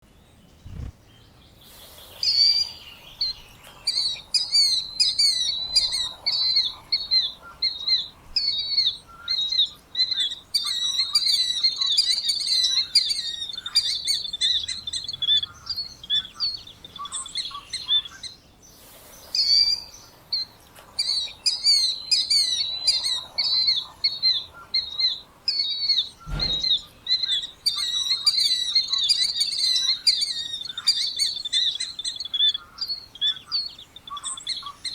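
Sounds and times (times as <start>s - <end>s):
killdeer calling: 2.2s - 18.4s, 19.2s - 34.9s
low thump: 26.2s - 26.8s.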